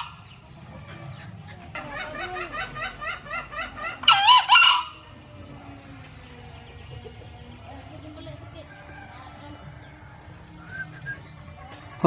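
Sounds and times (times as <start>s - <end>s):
junglefowl crowing: 0.0s - 7.3s
junglefowl clucking: 0.0s - 12.0s.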